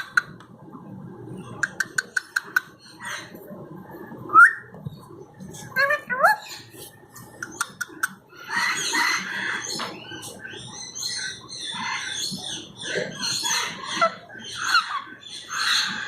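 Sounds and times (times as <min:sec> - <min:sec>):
parrots squawking: 0:05.5 - 0:16.0.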